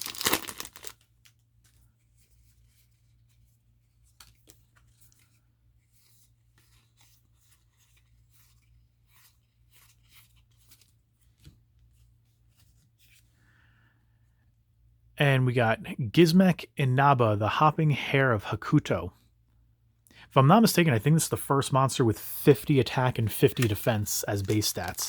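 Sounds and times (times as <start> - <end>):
foil pack rustling: 0.0 - 1.0, 22.9 - 25.0
trading cards clicking and rustling: 22.1 - 25.0.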